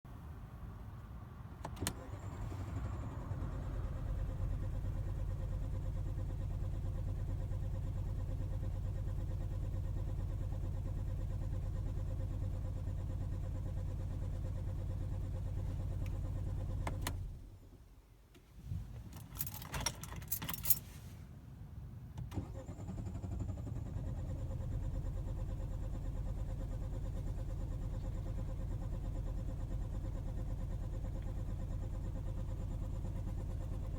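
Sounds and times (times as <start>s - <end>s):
car engine cranking on starter: 1.6s - 11.9s, 18.8s - 21.0s, 22.2s - 33.9s
clicks and rattles: 19.0s - 20.8s.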